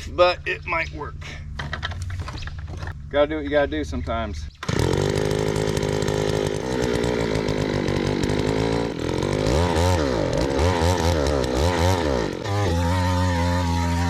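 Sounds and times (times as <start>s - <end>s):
post hole auger engine running: 4.6s - 14.0s.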